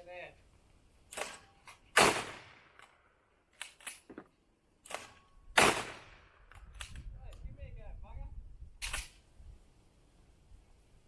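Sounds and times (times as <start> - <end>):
shotgun shot echoing: 2.0 - 2.8, 4.9 - 6.4.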